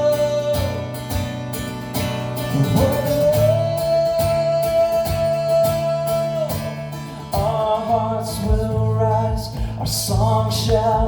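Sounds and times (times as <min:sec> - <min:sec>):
guitar strumming: 0:00.0 - 0:11.0
worship band playing: 0:02.4 - 0:06.8.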